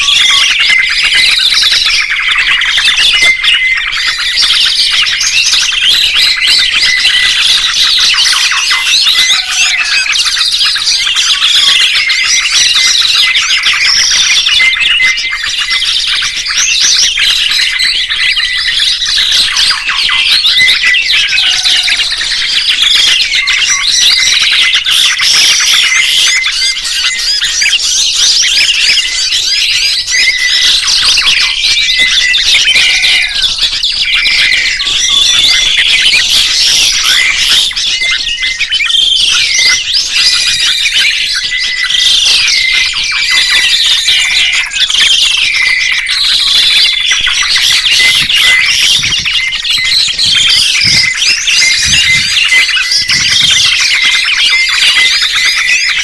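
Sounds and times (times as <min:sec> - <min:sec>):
songbirds chirping and trilling: 0:00.0 - 0:56.0.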